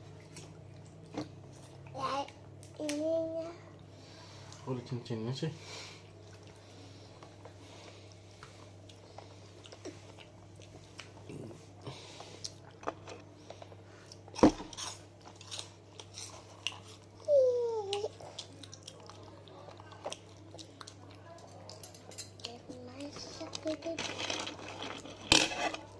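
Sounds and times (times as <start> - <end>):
chewing crunchy snacks: 12.2 - 17.2, 17.9 - 25.9.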